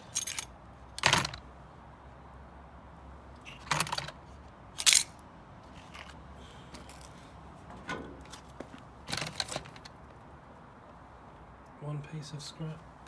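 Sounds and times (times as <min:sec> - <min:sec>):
scrap parts clacking: 0:00.1 - 0:01.4, 0:04.8 - 0:05.1.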